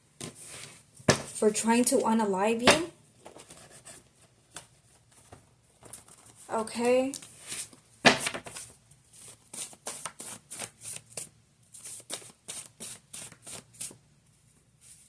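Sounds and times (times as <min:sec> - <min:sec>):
cards being shuffled: 0:05.8 - 0:14.0.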